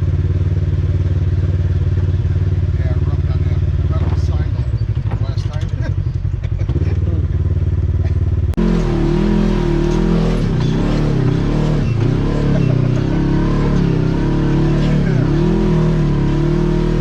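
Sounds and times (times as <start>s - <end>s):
engine revving under way: 6.6s - 17.0s.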